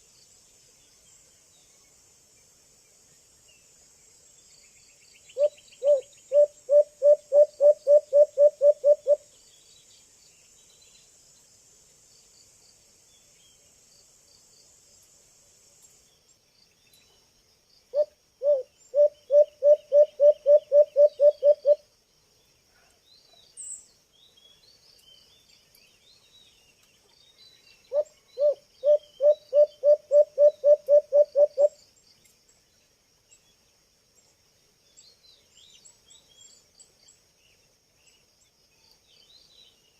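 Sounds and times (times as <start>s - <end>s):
insects trilling: 4.3s - 11.5s, 17.7s - 22.2s, 27.5s - 39.9s
dove hooting: 5.4s - 9.2s, 18.0s - 21.8s, 27.9s - 31.8s.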